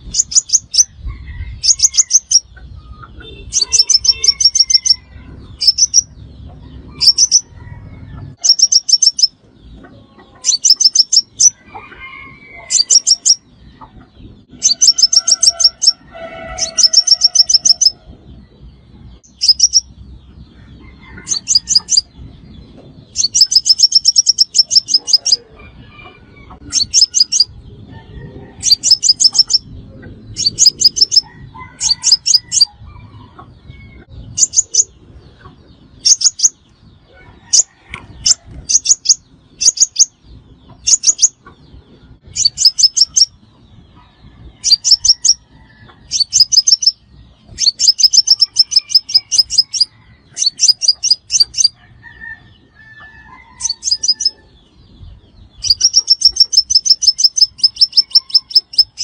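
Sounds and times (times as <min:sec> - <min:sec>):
bird high sharp chip notes: 0:03.2 - 0:05.0, 0:08.4 - 0:09.4, 0:14.6 - 0:18.0.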